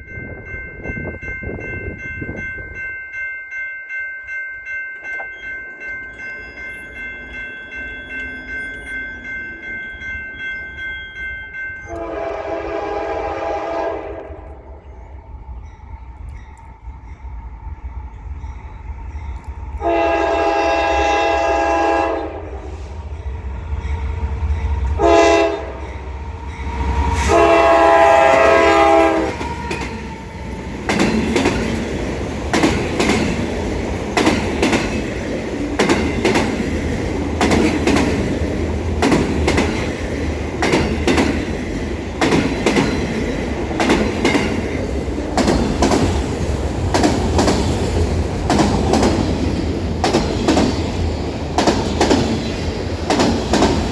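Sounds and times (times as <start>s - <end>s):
train rumbling past: 4.7s - 53.9s
locomotive air horn: 11.9s - 14.7s, 19.8s - 23.0s, 25.0s - 25.8s, 27.1s - 29.8s
wheels clacking over rail joints: 28.3s - 53.9s.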